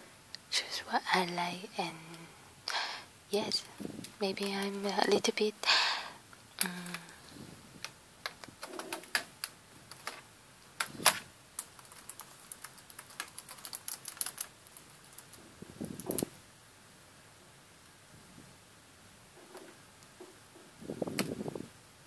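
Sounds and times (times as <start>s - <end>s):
typing on a keyboard: 8.3s - 10.2s, 11.6s - 15.4s.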